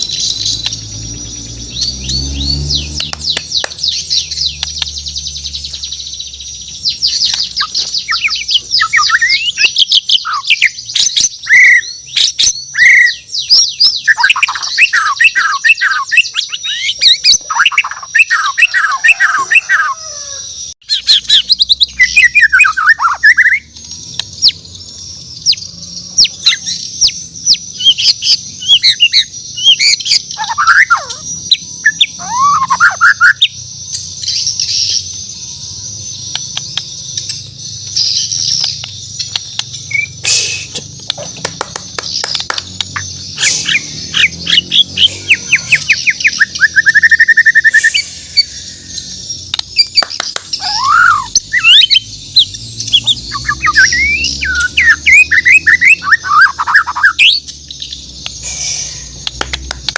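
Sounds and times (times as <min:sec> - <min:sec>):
songbird singing: 0:00.0 - 0:59.9.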